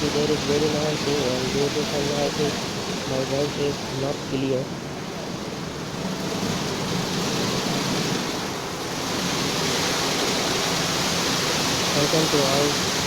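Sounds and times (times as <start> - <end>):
car wash water jets rushing: 0.0 - 13.0.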